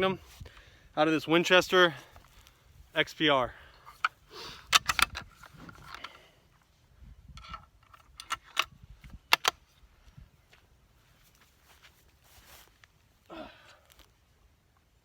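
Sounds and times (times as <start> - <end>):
rifle bolt metallic clicks: 4.7 - 5.3, 7.4 - 9.6.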